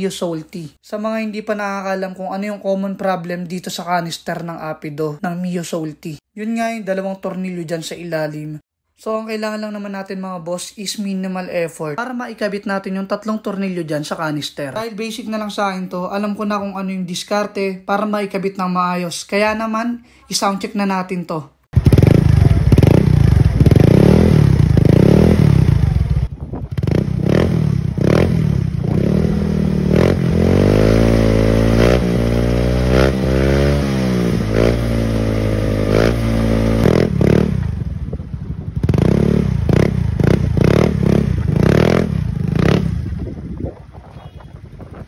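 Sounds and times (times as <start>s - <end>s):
scooter engine revving: 21.7s - 43.6s.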